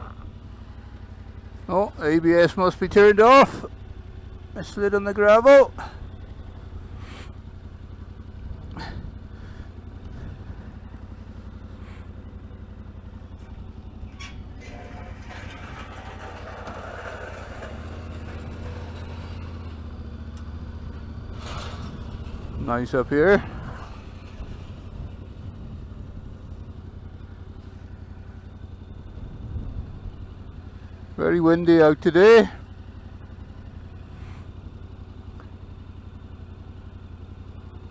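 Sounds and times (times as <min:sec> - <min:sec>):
motorcycle engine running: 0:00.0 - 0:37.9
wind noise: 0:29.2 - 0:30.1.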